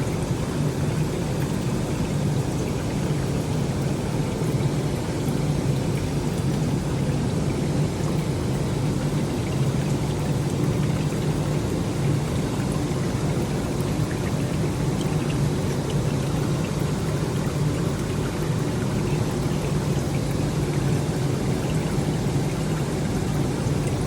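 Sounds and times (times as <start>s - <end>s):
water pouring and splashing: 0.0s - 24.0s.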